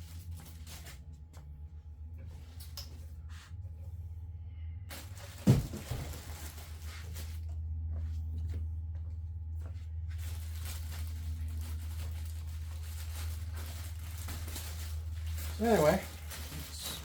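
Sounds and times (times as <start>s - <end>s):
low steady hum: 0.0s - 17.0s
packaging rustling: 4.9s - 7.4s, 10.2s - 17.0s.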